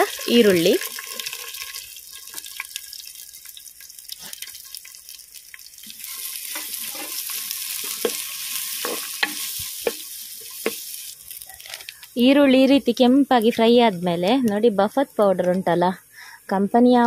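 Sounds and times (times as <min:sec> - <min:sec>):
onion sizzling in oil: 0:00.0 - 0:16.4
spatula scraping a pan: 0:06.0 - 0:11.0.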